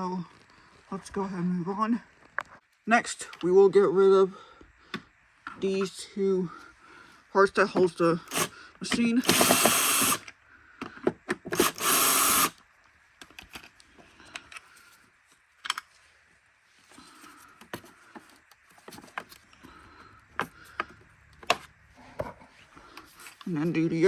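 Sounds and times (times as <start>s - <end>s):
power screwdriver running: 8.3s - 8.5s, 9.2s - 10.3s, 11.5s - 12.6s.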